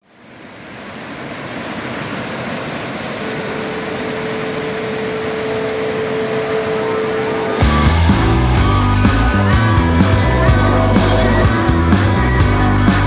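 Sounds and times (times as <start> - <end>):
waterfall roar: 0.1 - 12.6
steady tone: 3.6 - 13.0.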